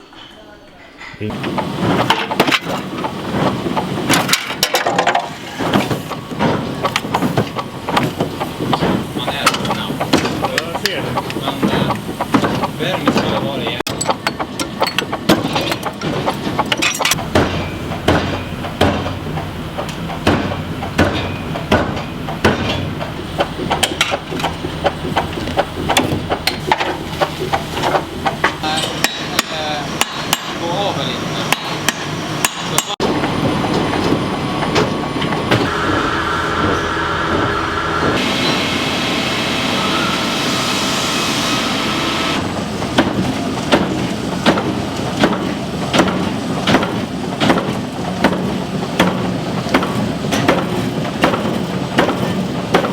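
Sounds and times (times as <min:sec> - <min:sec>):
steady machine noise with hiss: 0:01.3 - 0:13.8, 0:34.5 - 0:47.2.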